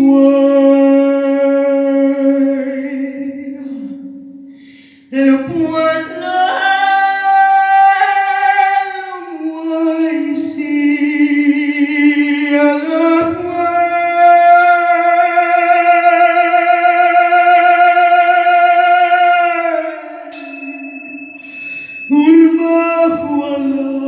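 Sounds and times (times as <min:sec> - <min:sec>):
voices singing long held notes: 0:21.4 - 0:24.0.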